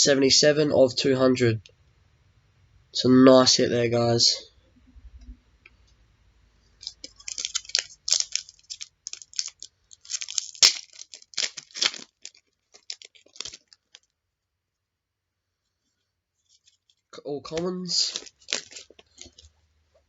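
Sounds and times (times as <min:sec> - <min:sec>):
wrapper tearing and crinkling: 0:06.8 - 0:14.1, 0:16.5 - 0:19.5.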